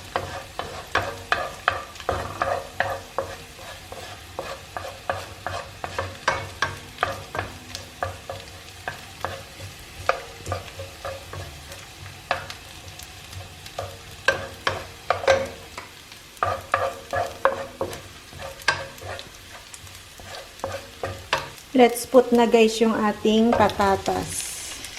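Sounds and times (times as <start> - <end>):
utensil scraping a pan: 0.0 - 12.5, 16.4 - 21.6
garlic sizzling in oil: 0.0 - 24.9.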